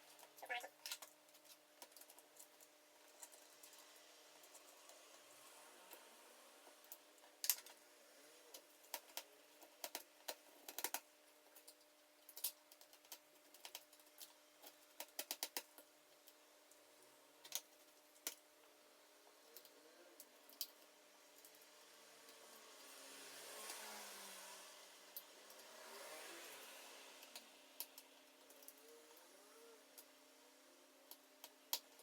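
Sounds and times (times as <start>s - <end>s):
small tools clicking and tapping: 8.5s - 15.9s.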